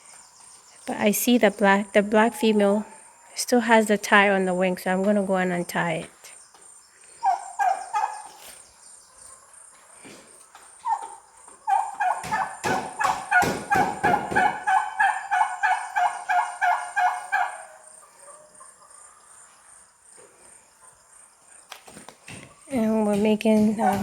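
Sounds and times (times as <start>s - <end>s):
turkey calling: 6.9s - 19.7s
loud knocks: 12.2s - 14.8s.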